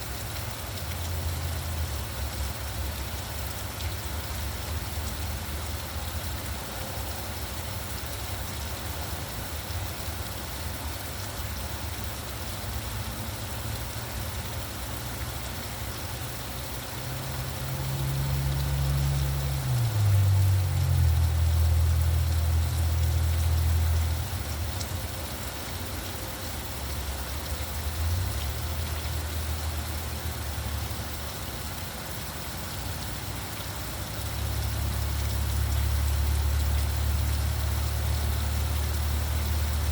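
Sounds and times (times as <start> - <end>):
steady rain hiss: 0.0 - 39.9
traffic engines humming: 17.1 - 24.3.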